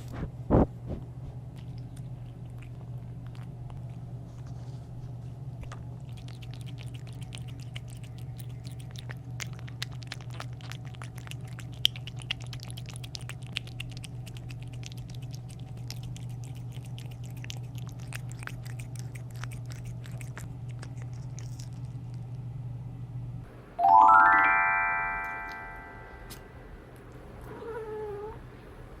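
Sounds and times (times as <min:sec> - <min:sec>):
steady low hum: 0:00.0 - 0:23.8, 0:25.2 - 0:29.0
cat crunching food: 0:01.4 - 0:22.5, 0:26.2 - 0:28.4
rising chime-like notes: 0:23.8 - 0:26.3.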